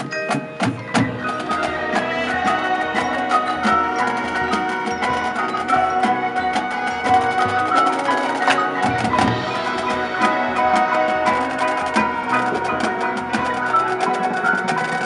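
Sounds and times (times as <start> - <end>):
rapid percussive clicking: 0.0 - 15.0.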